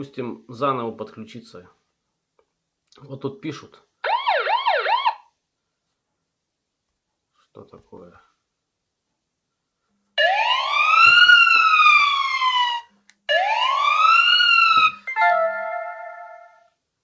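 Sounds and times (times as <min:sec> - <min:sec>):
electronic siren-like whoops: 0:04.1 - 0:05.2, 0:10.2 - 0:15.1.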